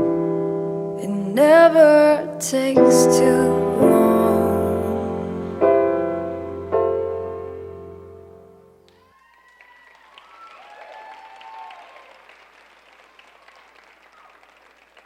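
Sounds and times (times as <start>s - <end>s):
piano chord: 0.0s - 8.9s
audience applauding: 8.9s - 15.0s.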